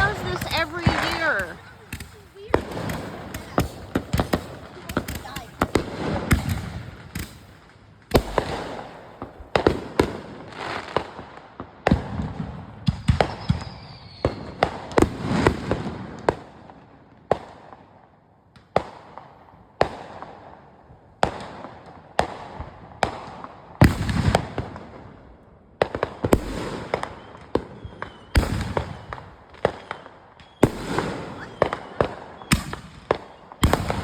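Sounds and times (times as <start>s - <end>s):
fireworks banging: 0.0s - 11.2s, 25.8s - 34.0s
fireworks crackling: 0.0s - 16.5s, 25.8s - 34.0s
faint high whistle: 29.9s - 30.6s.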